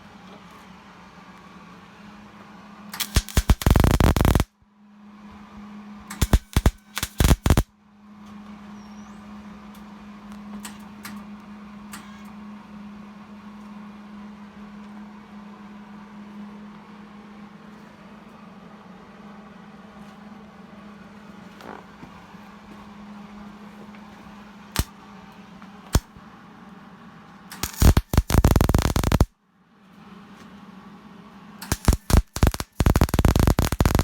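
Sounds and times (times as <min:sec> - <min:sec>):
steady low hum: 0:02.2 - 0:08.0, 0:22.4 - 0:29.3, 0:31.4 - 0:34.0
welding arc crackling: 0:03.0 - 0:04.5, 0:06.2 - 0:07.7, 0:27.6 - 0:29.3, 0:31.7 - 0:34.0.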